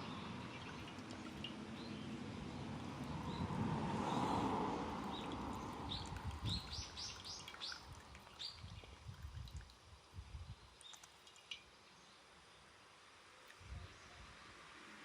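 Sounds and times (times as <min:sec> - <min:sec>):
bird chirping: 0:05.1 - 0:08.6.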